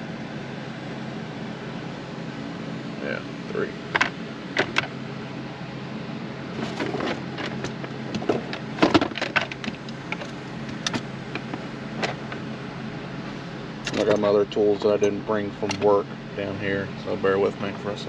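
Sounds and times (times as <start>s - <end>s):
tools and parts clicking and knocking: 6.8s - 12.4s.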